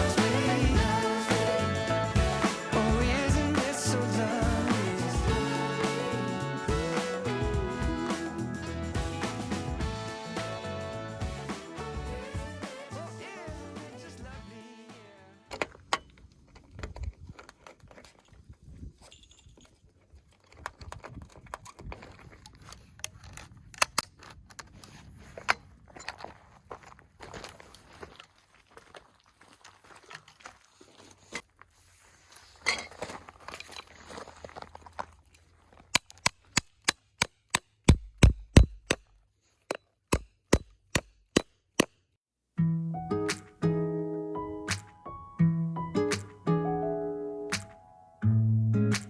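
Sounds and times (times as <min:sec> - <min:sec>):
hatchet chopping firewood: 0:36.0 - 0:42.0.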